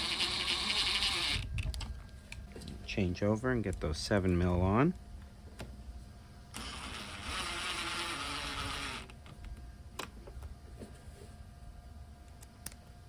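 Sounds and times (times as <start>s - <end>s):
cordless power tool spinning: 0.0s - 1.4s, 6.5s - 9.2s.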